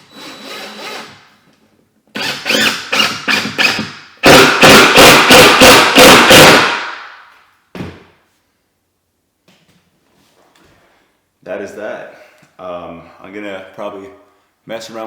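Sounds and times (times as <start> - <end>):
power driver driving screw: 2.2 - 6.7.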